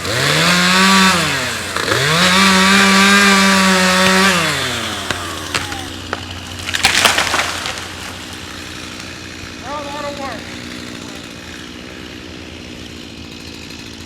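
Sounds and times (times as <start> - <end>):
chainsaw revving and cutting: 0.0 - 14.0
sharp cracks and snaps: 4.0 - 8.4.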